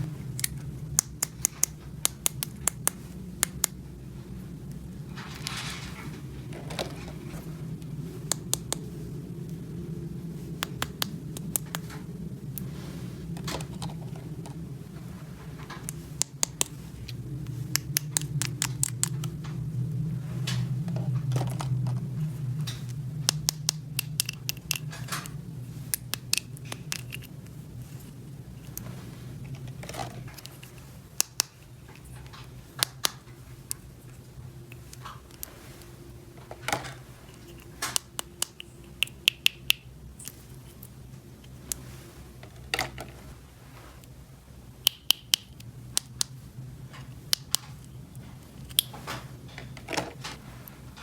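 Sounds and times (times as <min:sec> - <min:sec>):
steady low hum: 0:00.0 - 0:51.0
plastic toy pieces clicking: 0:17.7 - 0:19.3, 0:23.3 - 0:25.3, 0:25.9 - 0:27.3.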